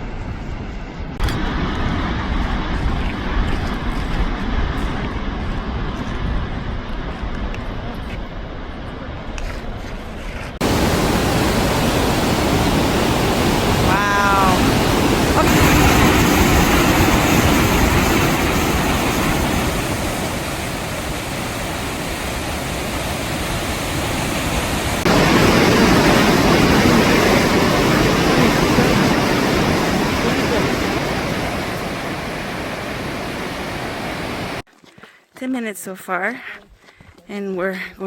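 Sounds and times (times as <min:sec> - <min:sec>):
waterfall roaring: 0:10.6 - 0:34.6.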